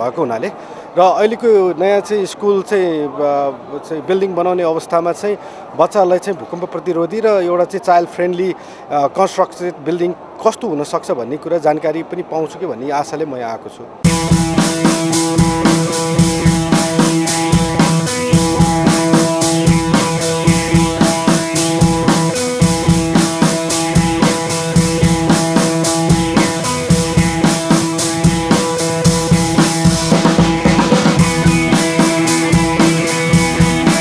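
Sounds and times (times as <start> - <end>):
drum-kit beat: 14.0 - 34.0
sustained melodic tones: 14.0 - 34.0.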